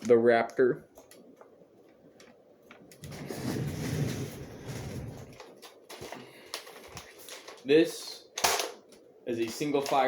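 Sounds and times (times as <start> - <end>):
rustling scrape of handling: 3.0 - 6.2.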